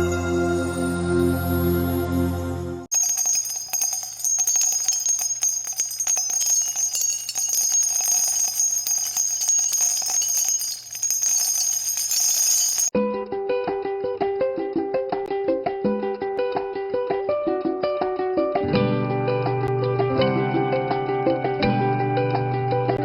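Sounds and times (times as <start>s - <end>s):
jingling bells and high chimes: 2.9s - 12.9s.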